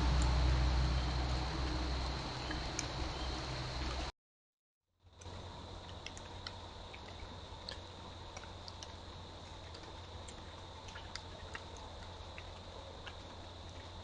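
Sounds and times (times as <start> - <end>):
background hiss and hum: 0.0 - 4.1, 5.0 - 14.0
faint ticks and clicks: 5.1 - 14.0.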